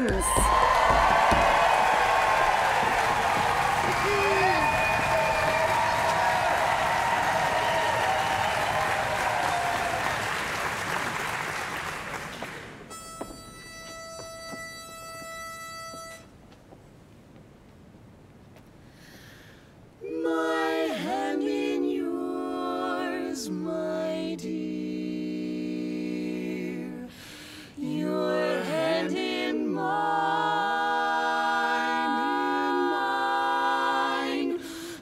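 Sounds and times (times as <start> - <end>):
quartet singing a cappella: 20.0 - 35.0.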